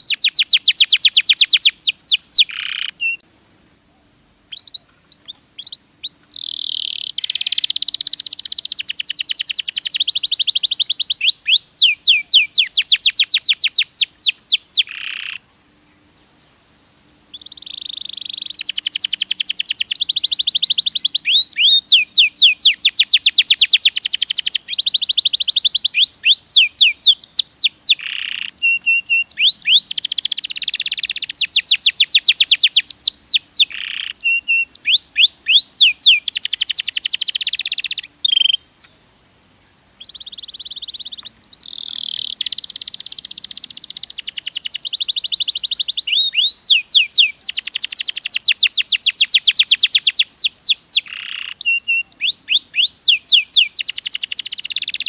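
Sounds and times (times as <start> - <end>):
canary singing trills: 0.0 - 3.3, 4.5 - 15.5, 17.3 - 39.0, 40.0 - 55.0.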